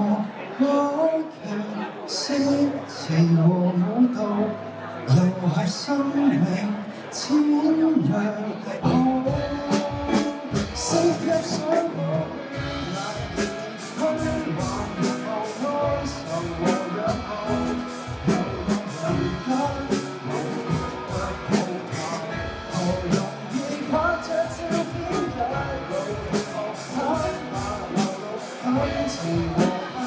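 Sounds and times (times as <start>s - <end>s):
guitar: 0.0s - 30.0s
drum kit beat: 8.8s - 30.0s.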